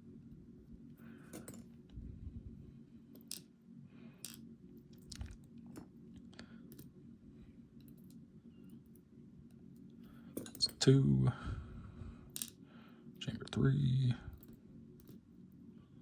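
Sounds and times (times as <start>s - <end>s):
steady low hum: 0.0s - 16.0s
small clicks of lock pins: 3.2s - 3.5s, 4.2s - 5.8s, 7.8s - 9.0s, 12.4s - 12.6s.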